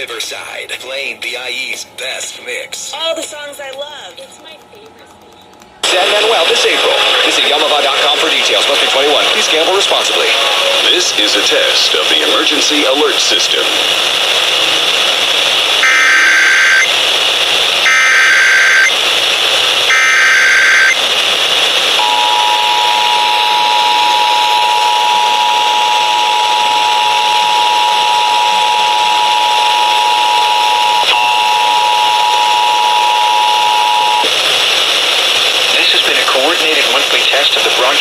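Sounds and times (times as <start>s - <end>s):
radio reception hiss: 5.8s - 38.0s
digital data bursts: 15.8s - 16.9s, 17.8s - 19.0s, 19.9s - 21.0s
screechy two-tone digital warble: 15.8s - 16.9s, 17.9s - 18.9s, 19.9s - 21.0s
two-tone attention signal: 15.8s - 16.9s, 17.9s - 18.9s, 19.9s - 21.0s, 22.0s - 34.2s.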